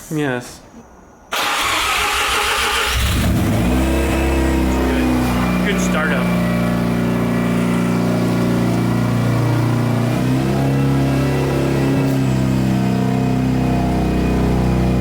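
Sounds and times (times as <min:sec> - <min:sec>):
rotary engine idling: 0:03.1 - 0:15.0.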